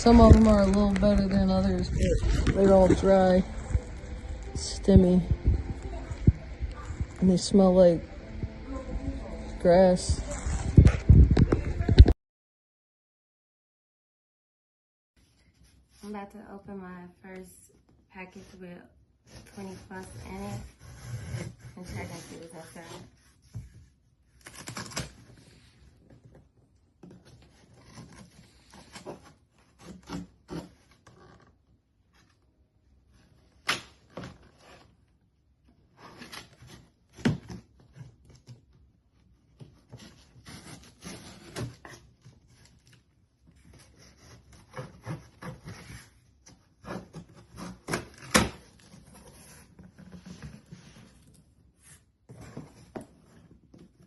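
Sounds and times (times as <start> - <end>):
package rustling and scraping: 0.0 - 7.6.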